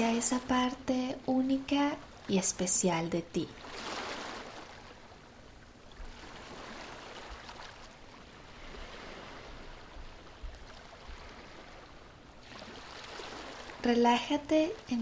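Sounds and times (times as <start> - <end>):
sea waves washing in: 0.0 - 15.0.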